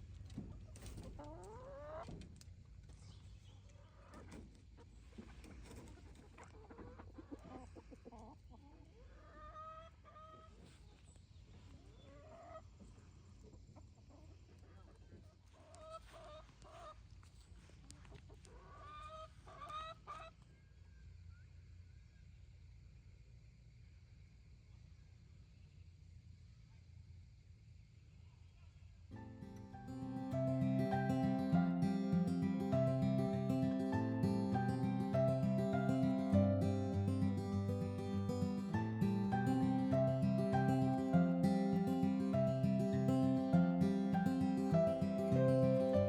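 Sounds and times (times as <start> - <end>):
chickens clucking: 0.3 - 2.4, 3.0 - 20.5.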